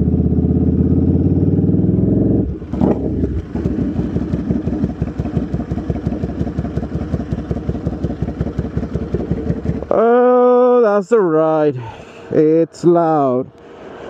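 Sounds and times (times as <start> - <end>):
motorcycle engine revving down: 0.0 - 10.7
motorcycle engine idling: 0.0 - 11.0.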